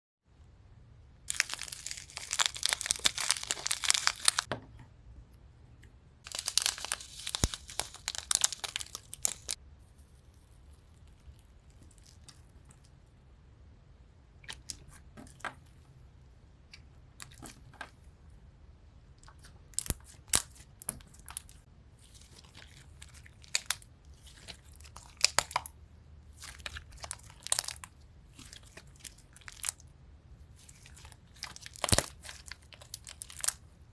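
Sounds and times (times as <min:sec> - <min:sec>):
crunchy slime crackling: 0:01.2 - 0:04.5, 0:06.2 - 0:09.6, 0:19.2 - 0:33.7.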